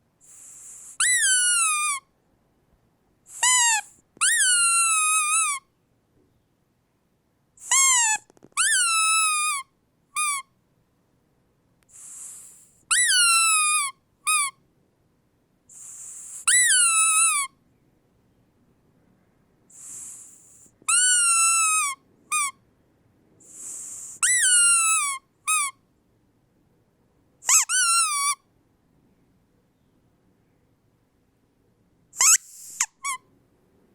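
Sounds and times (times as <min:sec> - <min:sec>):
breathy hiss of air: 0:00.2 - 0:01.0, 0:11.9 - 0:12.9, 0:15.7 - 0:16.5, 0:19.7 - 0:20.8, 0:23.4 - 0:24.2
squeaky dog toy squeaking: 0:00.2 - 0:02.1, 0:03.3 - 0:05.7, 0:07.6 - 0:10.5, 0:12.2 - 0:14.6, 0:15.8 - 0:17.6, 0:19.8 - 0:22.6, 0:23.5 - 0:25.8, 0:27.4 - 0:28.4, 0:32.2 - 0:33.3.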